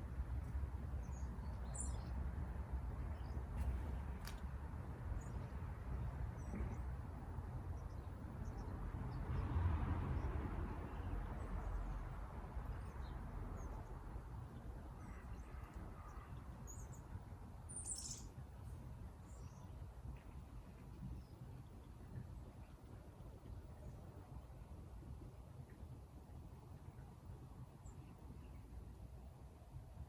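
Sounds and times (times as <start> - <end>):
bird chirps: 17.7 - 18.3.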